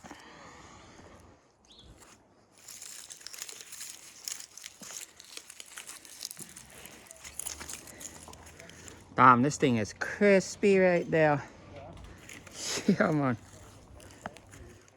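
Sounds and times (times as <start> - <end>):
dry bark and twigs crackling: 0.0 - 0.4, 1.7 - 11.3, 12.0 - 14.9.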